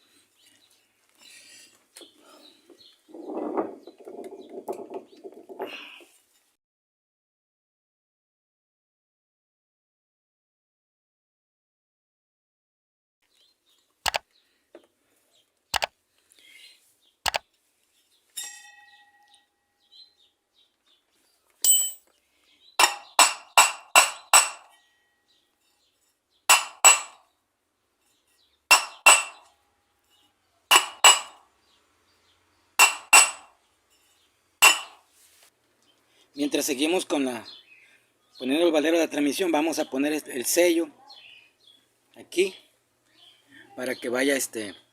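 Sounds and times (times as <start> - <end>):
metal-on-metal taps: 22.8 - 24.7, 26.5 - 27.2, 30.7 - 31.4, 32.8 - 33.5, 34.6 - 35.0.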